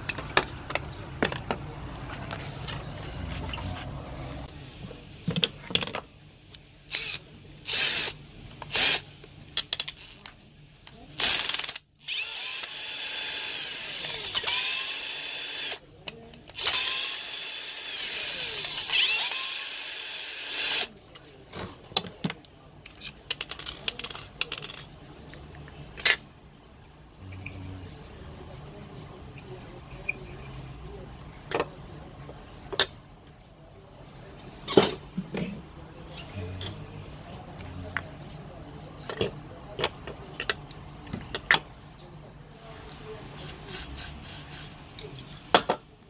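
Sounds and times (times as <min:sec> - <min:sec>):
electric drill motor whining: 0:11.2 - 0:15.8, 0:16.6 - 0:20.9.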